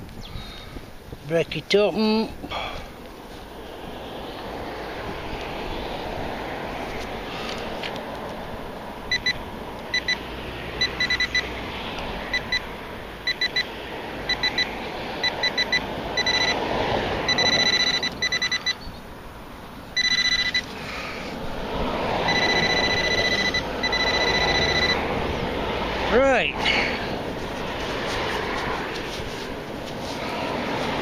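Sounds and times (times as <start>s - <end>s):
rustling wind noise: 0.0s - 10.8s, 25.0s - 31.0s
metal detector beeping: 9.1s - 10.2s, 10.8s - 11.5s, 12.3s - 13.7s, 14.3s - 16.6s, 17.3s - 18.9s, 20.0s - 20.7s, 22.3s - 25.0s.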